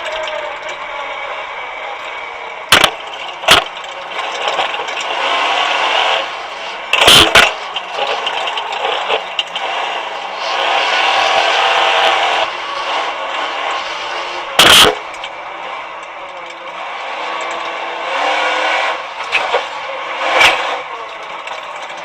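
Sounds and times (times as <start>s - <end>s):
buggy engine revving: 0.0s - 22.0s
sharp loud cracks: 2.7s - 12.5s, 14.4s - 15.4s.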